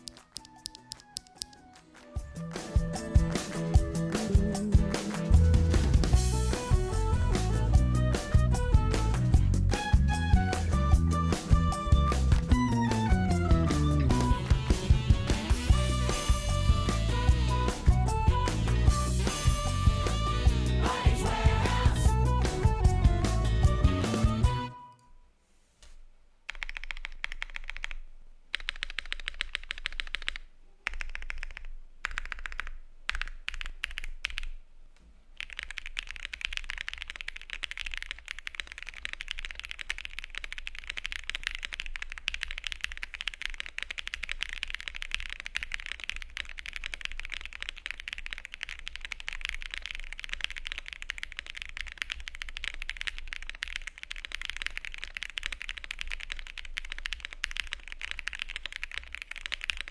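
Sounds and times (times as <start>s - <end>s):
mechanical keyboard typing: 0.0s - 2.1s, 26.5s - 34.6s, 35.4s - 59.9s.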